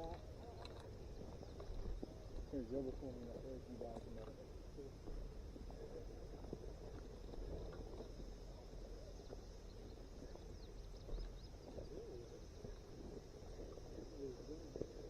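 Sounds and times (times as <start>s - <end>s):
faint bird chirps: 8.9s - 14.8s.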